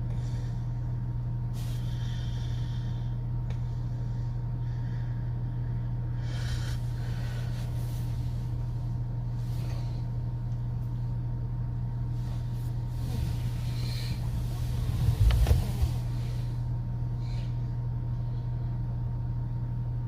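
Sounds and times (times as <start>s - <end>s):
woman breathing in sleep: 0.0s - 8.6s, 12.2s - 18.6s
steady low hum: 0.0s - 20.0s.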